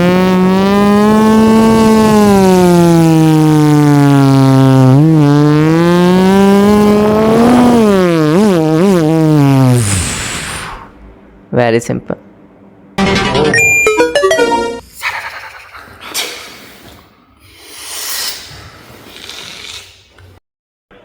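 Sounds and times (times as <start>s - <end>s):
vocal racing car imitation: 0.0s - 11.0s.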